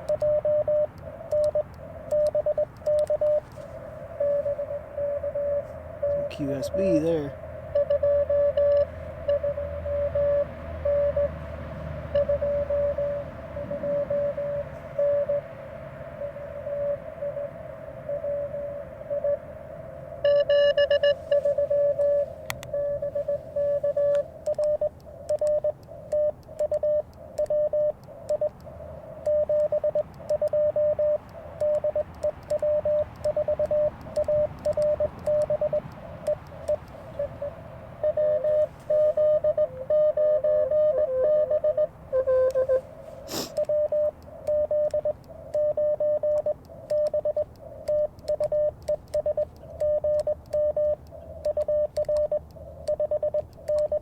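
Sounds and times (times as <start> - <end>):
morse code tone: 0.0 - 54.0
radio band noise hiss: 0.9 - 8.3, 12.7 - 24.4, 41.9 - 44.5.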